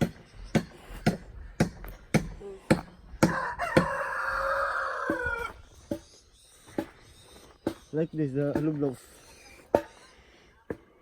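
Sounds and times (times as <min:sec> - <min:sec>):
rooster crowing: 0:03.2 - 0:05.6.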